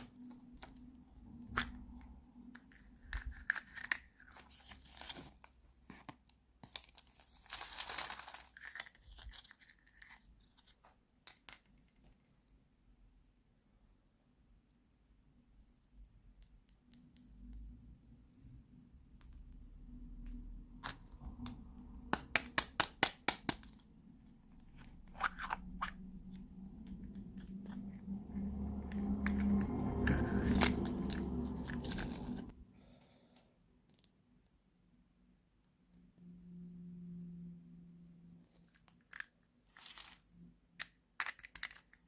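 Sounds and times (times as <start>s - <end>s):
packaging rustling and scraping: 2.6s - 11.0s, 24.5s - 32.6s, 38.4s - 40.4s
plastic toy pieces clicking: 40.8s - 42.0s.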